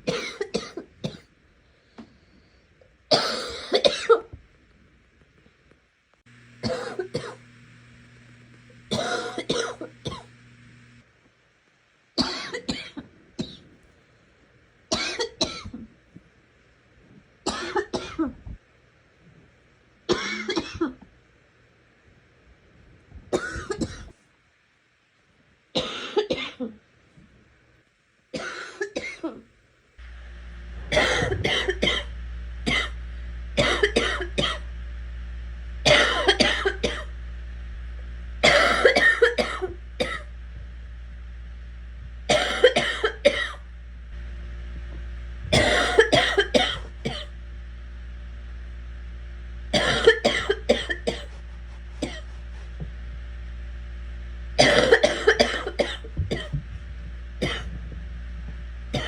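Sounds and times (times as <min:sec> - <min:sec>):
steady low hum: 0:00.0 - 0:59.0
girl coughing: 0:00.1 - 0:01.3, 0:03.1 - 0:04.4, 0:06.6 - 0:07.4, 0:08.9 - 0:10.3, 0:20.1 - 0:21.0, 0:23.3 - 0:24.1, 0:30.9 - 0:32.1, 0:33.6 - 0:34.6, 0:35.9 - 0:37.1, 0:38.4 - 0:40.2, 0:42.3 - 0:43.6, 0:45.5 - 0:47.3, 0:49.8 - 0:51.3, 0:52.0 - 0:52.3, 0:54.6 - 0:56.6.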